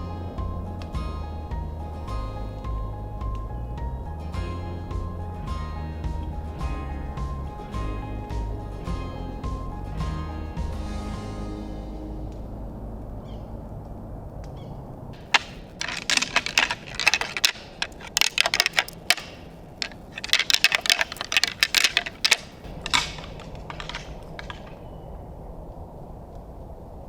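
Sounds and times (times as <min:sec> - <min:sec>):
sharp crackling and clicking: 0:15.2 - 0:24.8.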